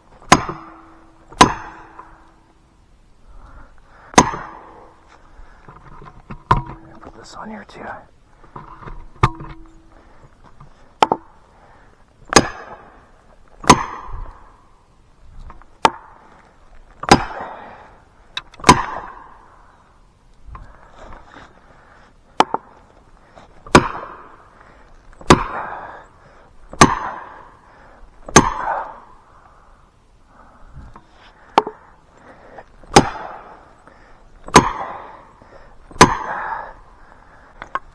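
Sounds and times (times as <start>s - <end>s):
heavy blows on steel wedges: 0.2s - 2.6s, 4.1s - 7.4s, 8.5s - 11.4s, 12.3s - 14.6s, 17.0s - 17.8s, 18.4s - 19.6s, 23.6s - 24.4s, 25.2s - 26.0s, 26.7s - 29.2s, 32.8s - 33.7s, 34.4s - 36.8s.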